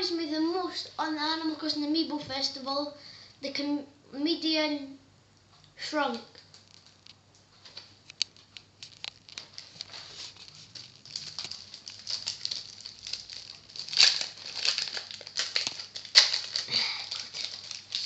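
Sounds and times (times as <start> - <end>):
wrapper crinkling and crackling: 6.3 - 18.0.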